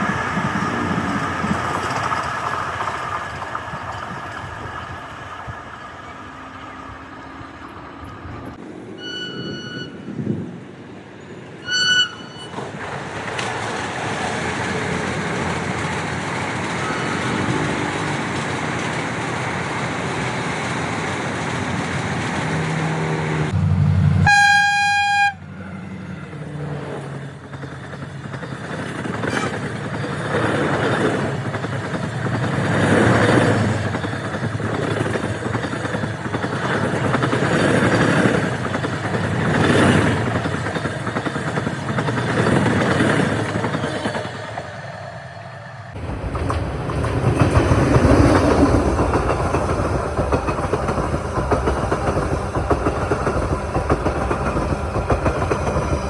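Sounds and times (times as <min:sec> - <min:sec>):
wheels clattering over rail joints: 0:00.0 - 0:10.3, 0:11.4 - 0:23.6, 0:26.2 - 0:44.8, 0:45.9 - 0:56.0
train rumbling past: 0:00.0 - 0:56.0
train horn blast: 0:08.9 - 0:10.2, 0:11.6 - 0:12.6, 0:23.6 - 0:25.7.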